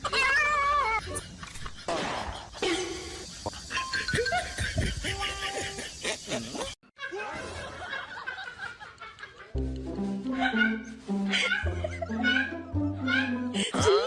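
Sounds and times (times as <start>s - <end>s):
people laughing and snickering: 0.8s - 14.0s
music: 9.5s - 14.0s.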